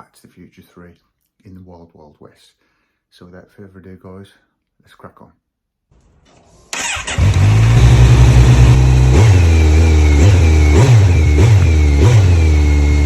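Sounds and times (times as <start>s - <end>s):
car engine idling and blipped: 6.0s - 13.0s.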